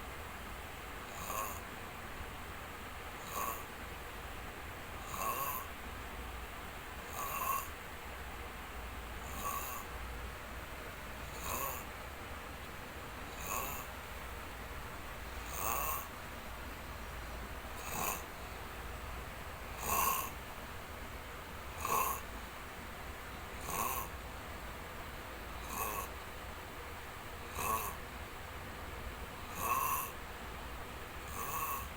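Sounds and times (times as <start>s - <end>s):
person snoring: 1.1s - 1.6s, 3.2s - 3.7s, 5.0s - 5.7s, 7.1s - 7.7s, 9.2s - 9.9s, 11.3s - 11.9s, 13.3s - 13.9s, 15.4s - 16.1s, 17.8s - 18.6s, 19.7s - 20.4s, 21.8s - 22.3s, 23.6s - 24.1s, 25.6s - 26.1s, 27.5s - 28.0s, 29.5s - 30.2s, 31.3s - 31.9s.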